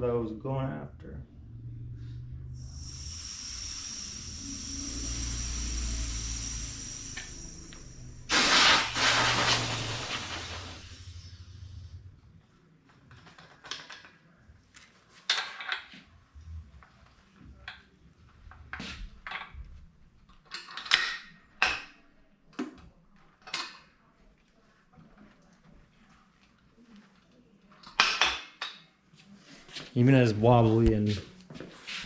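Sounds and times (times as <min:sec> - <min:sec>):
compressed air hissing from hose: 0:02.6 - 0:11.6.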